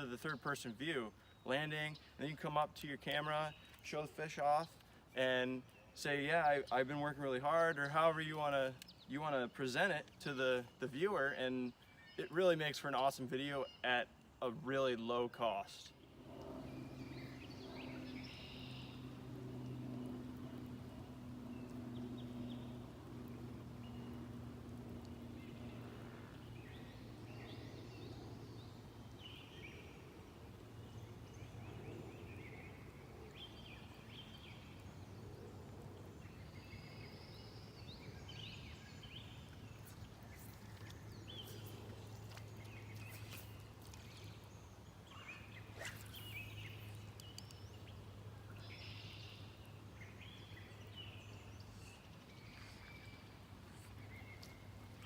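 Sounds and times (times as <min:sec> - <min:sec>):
birds chirping: 0:00.0 - 0:55.0
steady low hum: 0:15.8 - 0:55.0.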